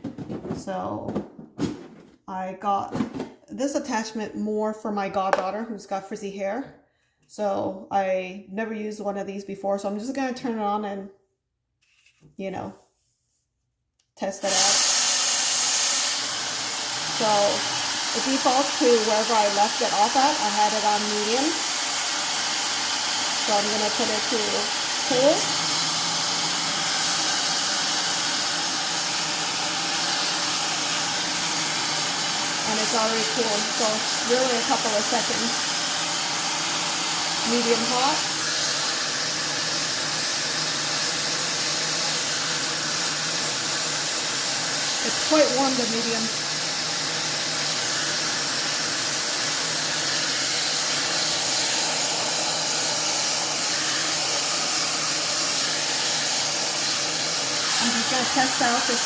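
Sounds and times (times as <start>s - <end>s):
hair dryer blowing air: 14.4s - 59.0s.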